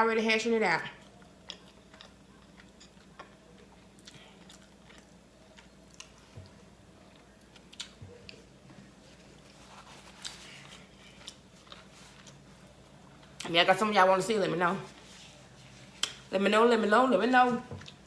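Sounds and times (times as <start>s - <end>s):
chewing meat: 1.0s - 8.5s.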